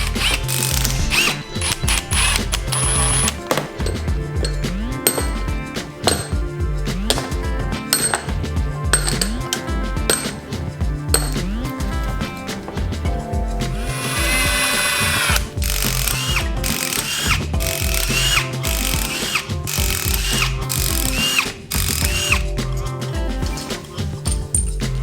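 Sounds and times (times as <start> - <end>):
power tool whirring in bursts: 0.0 - 3.8, 13.8 - 22.5
background music with steady beat: 0.0 - 25.0.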